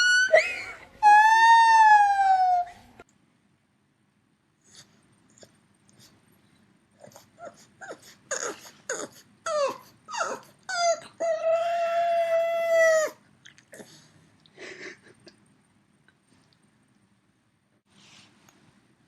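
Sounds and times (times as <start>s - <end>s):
dog whining yelps: 0.0s - 2.8s, 7.0s - 13.2s
dog howling: 7.4s - 13.2s.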